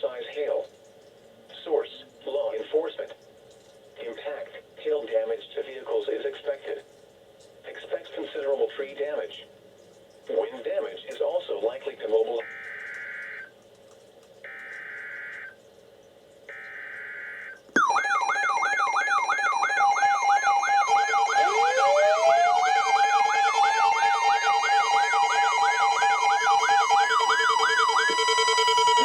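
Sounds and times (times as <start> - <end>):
warbling electronic alarm: 12.4 - 13.5, 14.4 - 15.6, 16.5 - 29.0
rising siren tone: 16.5 - 29.0.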